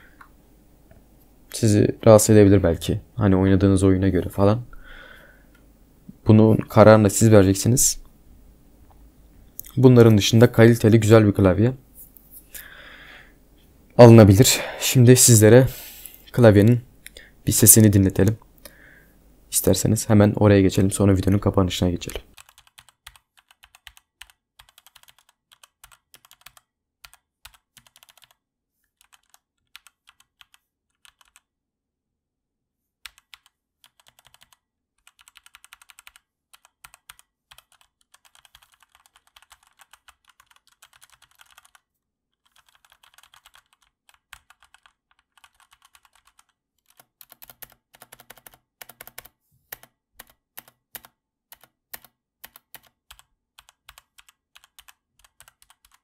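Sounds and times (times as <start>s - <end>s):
typing on mechanical keyboard: 22.3s - 28.4s, 29.0s - 31.5s, 33.0s - 56.0s.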